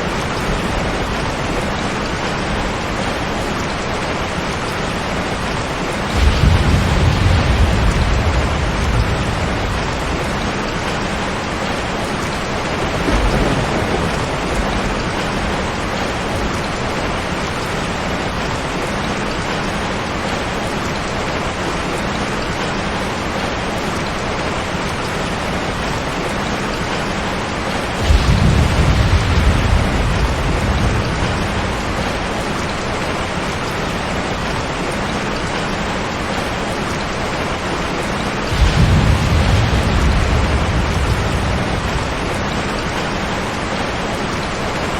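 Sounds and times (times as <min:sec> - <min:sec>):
heavy rain on a tin roof: 0:00.0 - 0:44.9
thunder rolling: 0:05.0 - 0:18.2, 0:27.7 - 0:33.4, 0:38.3 - 0:44.9.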